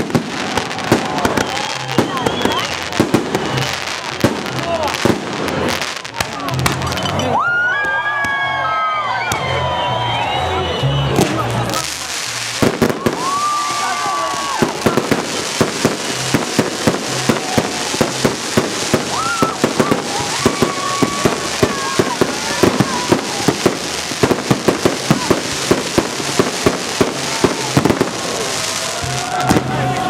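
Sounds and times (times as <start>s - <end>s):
fireworks cracking and banging: 0.0s - 7.4s, 11.1s - 30.0s.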